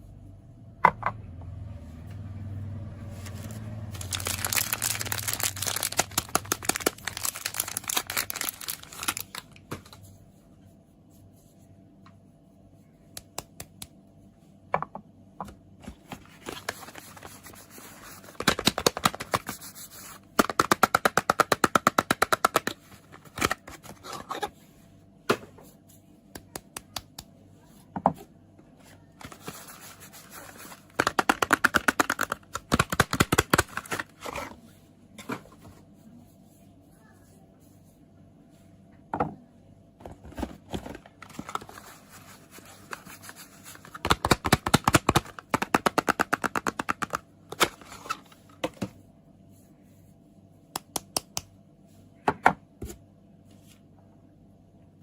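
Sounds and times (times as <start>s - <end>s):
packaging crinkling: 3.2s - 10.0s, 16.1s - 19.8s, 29.2s - 34.5s, 40.8s - 48.2s
fingernail tapping on packaging: 44.2s - 47.2s.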